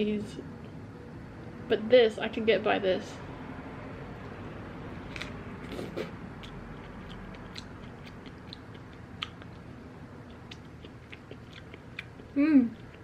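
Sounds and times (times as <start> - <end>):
wet mouth clicks chewing: 5.1 - 13.0.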